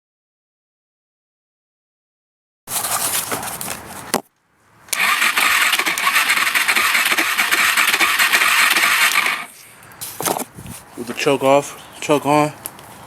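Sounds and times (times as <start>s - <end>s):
engine cranking with electric starter: 4.9s - 9.6s.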